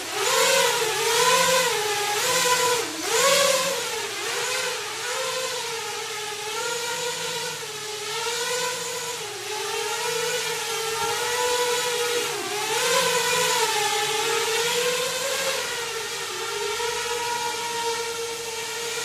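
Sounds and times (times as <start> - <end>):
drone motors whirring: 0.0 - 19.0.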